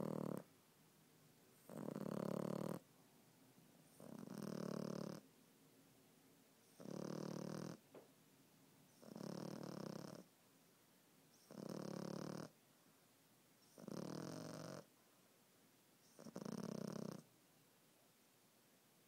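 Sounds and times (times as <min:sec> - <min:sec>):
puppy snoring: 0:00.0 - 0:00.5, 0:01.6 - 0:02.9, 0:03.9 - 0:05.2, 0:06.6 - 0:07.8, 0:08.9 - 0:10.3, 0:11.4 - 0:12.6, 0:13.6 - 0:14.9, 0:16.0 - 0:17.3.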